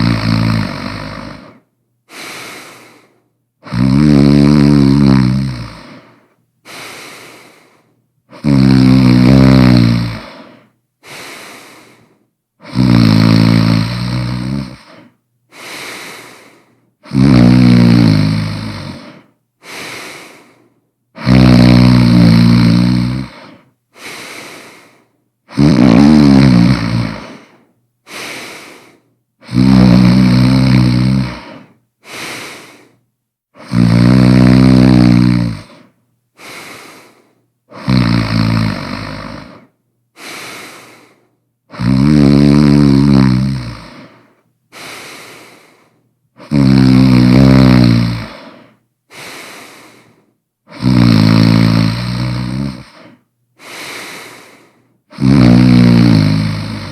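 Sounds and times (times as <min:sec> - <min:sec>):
person snoring loudly: 0:00.0 - 0:07.7, 0:08.3 - 0:20.6, 0:21.2 - 0:33.0, 0:33.6 - 0:56.9
quiet breath: 0:00.6 - 0:03.8, 0:05.6 - 0:08.6, 0:10.1 - 0:12.9, 0:14.2 - 0:17.2, 0:18.8 - 0:21.3, 0:22.0 - 0:25.6, 0:26.7 - 0:29.6, 0:30.8 - 0:34.0, 0:35.0 - 0:37.9, 0:38.8 - 0:41.8, 0:43.6 - 0:56.9.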